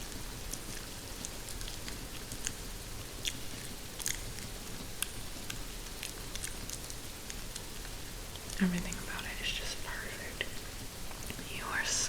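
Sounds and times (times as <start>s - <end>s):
wet chewing mouth sounds: 0.0s - 9.0s.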